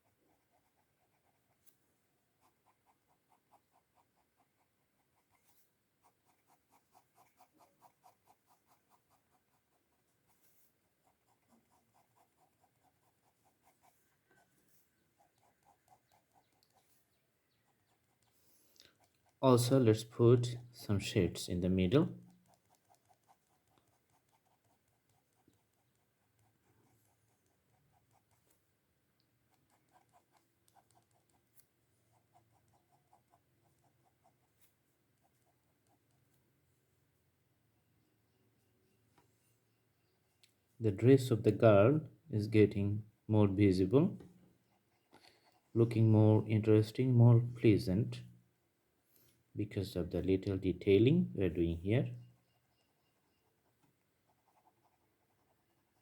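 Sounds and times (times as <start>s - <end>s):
pencil scratching on paper: 0.0s - 28.8s, 29.4s - 36.4s, 52.2s - 56.0s.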